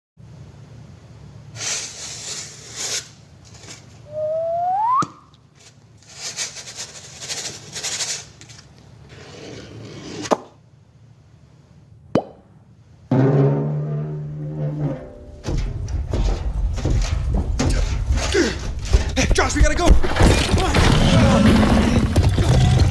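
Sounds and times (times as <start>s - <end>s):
short rising whistle: 4.1s - 5.3s.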